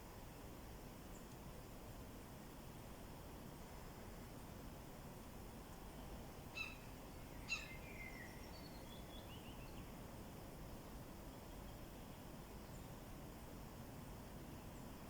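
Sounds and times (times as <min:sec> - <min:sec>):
faint outdoor hiss: 0:00.0 - 0:15.0
bird calling: 0:06.6 - 0:06.9, 0:07.5 - 0:08.2.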